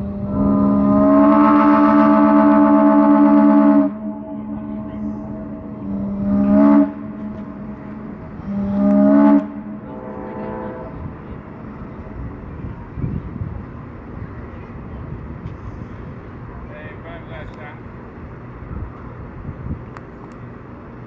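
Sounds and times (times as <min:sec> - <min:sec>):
steamer whistle blasts: 0:00.0 - 0:11.2
outdoor background noise: 0:00.0 - 0:21.0
low thumps: 0:03.4 - 0:09.8.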